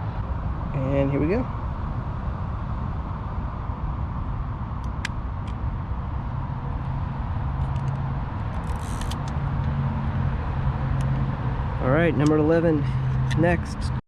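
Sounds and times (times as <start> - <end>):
low traffic rumble: 0.0 - 14.0
film advance crank winding: 8.5 - 9.3.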